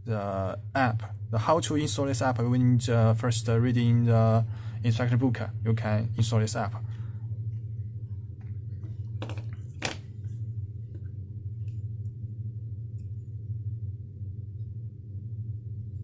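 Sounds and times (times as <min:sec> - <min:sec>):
steady low hum: 0:00.0 - 0:16.0
handling rustles and clicks: 0:08.8 - 0:10.1.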